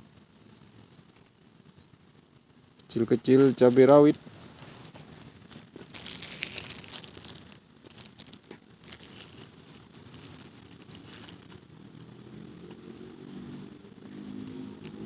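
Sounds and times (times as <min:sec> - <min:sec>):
rustling and crinkling: 0:03.2 - 0:11.7.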